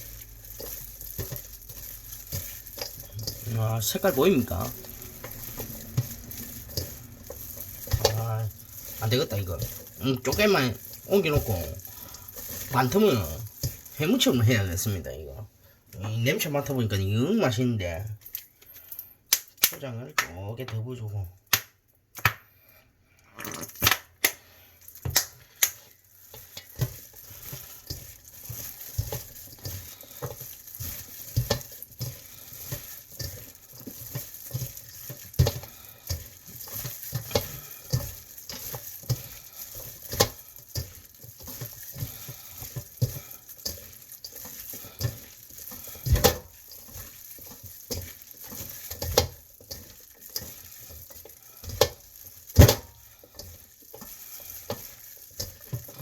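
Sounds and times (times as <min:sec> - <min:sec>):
wet squelching and sticky clicks: 0:23.7 - 0:31.6.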